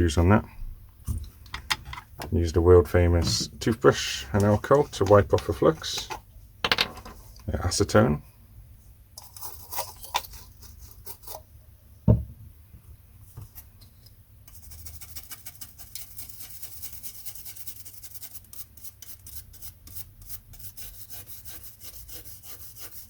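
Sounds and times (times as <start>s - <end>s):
thump: 12.0s - 12.4s
toothbrush scrubbing circuit board: 14.5s - 23.0s.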